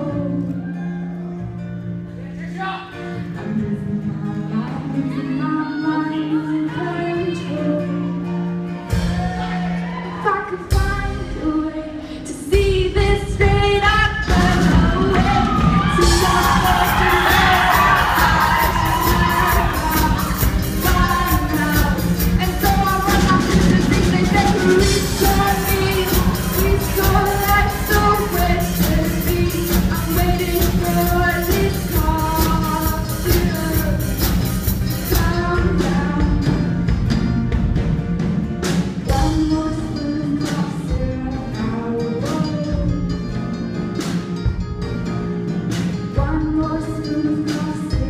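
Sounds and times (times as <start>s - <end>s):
rock band playing: 0.0s - 48.0s
drum hits: 14.2s - 30.5s.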